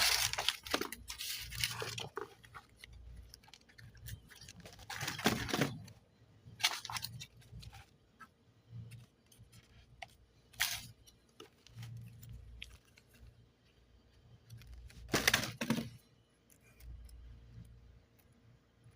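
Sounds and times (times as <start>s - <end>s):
foil packaging crinkling: 0.0s - 5.9s, 6.6s - 7.9s, 10.5s - 13.2s.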